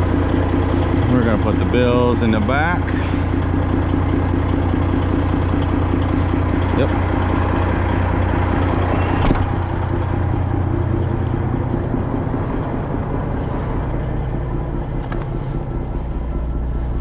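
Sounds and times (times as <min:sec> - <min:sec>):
diesel truck engine idling: 0:00.0 - 0:17.0.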